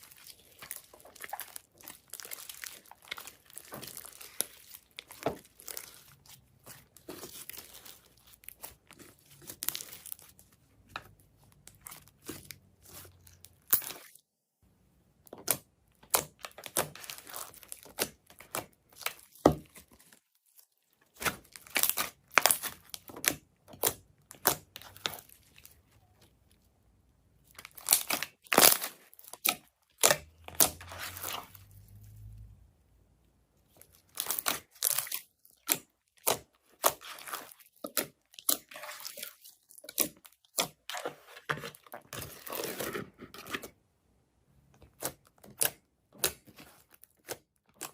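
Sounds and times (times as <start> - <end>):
crinkling handling noise: 0.0 - 14.2, 33.6 - 43.8.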